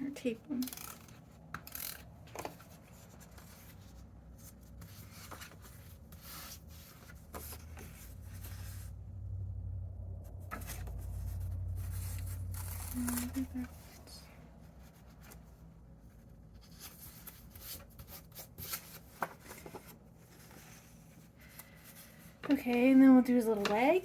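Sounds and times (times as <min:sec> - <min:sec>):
low steady hum: 0:00.0 - 0:24.0.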